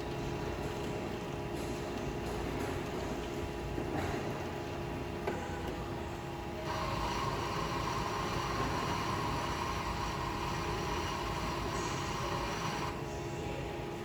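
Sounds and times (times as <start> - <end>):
coffee machine humming: 0.0 - 14.0
motor whirring: 6.6 - 13.0.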